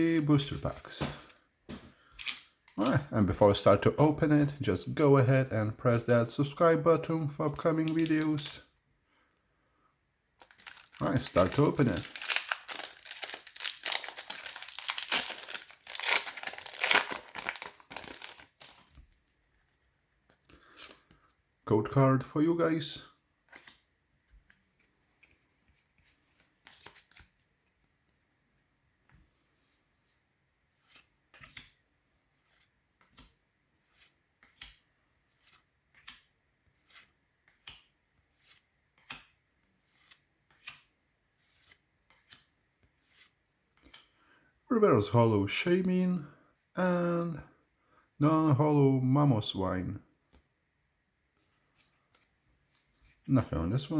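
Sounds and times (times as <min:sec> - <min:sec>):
foil wrapper crinkling and tearing: 0:10.4 - 0:19.0.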